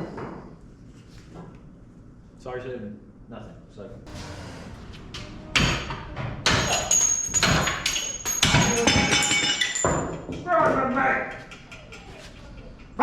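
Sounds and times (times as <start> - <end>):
ringing metal clanks and bangs: 4.1 - 10.5.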